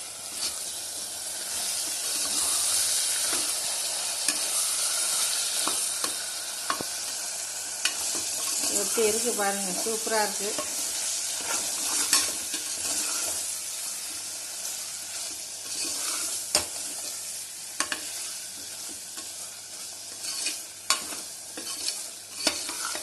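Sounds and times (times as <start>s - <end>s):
meat sizzling in a pot: 0.0s - 23.0s.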